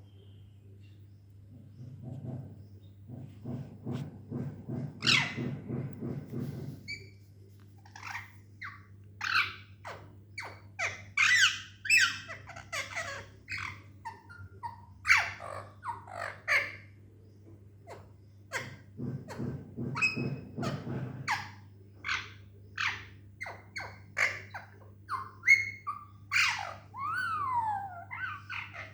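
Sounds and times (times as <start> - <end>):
small animal squeaking: 7.8 - 16.9, 17.9 - 28.9.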